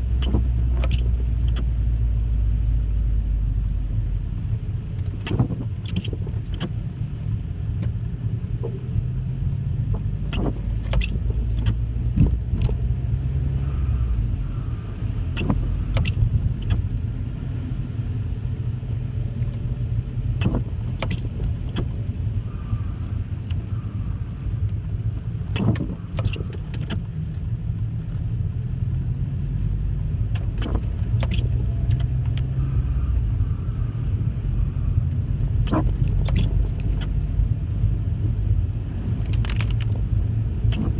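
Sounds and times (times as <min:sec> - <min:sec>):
car engine and road noise: 0:00.0 - 0:40.9
sharp clicks and rattles: 0:39.1 - 0:40.9.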